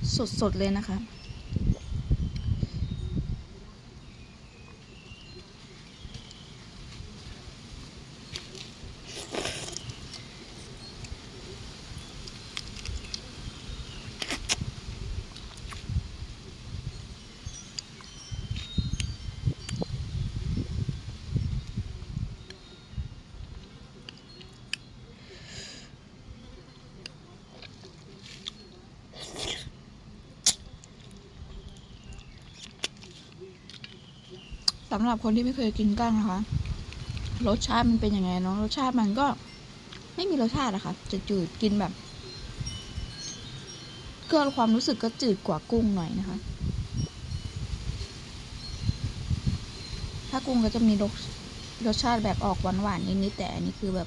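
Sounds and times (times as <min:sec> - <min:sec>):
shell cracking and chewing: 0:12.0 - 0:13.4, 0:30.4 - 0:34.8.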